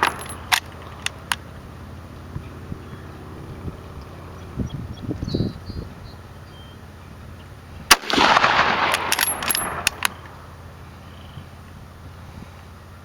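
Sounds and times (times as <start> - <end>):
sharp cracks: 0.0 - 1.7, 7.9 - 10.8
echo of gunshot: 7.9 - 10.2
rifle shot: 7.9 - 10.4.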